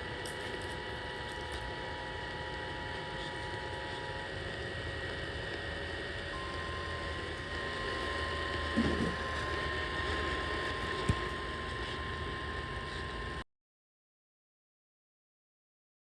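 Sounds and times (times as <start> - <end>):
faint two-note tone: 6.3 - 9.7
faint single tone: 6.3 - 12.0.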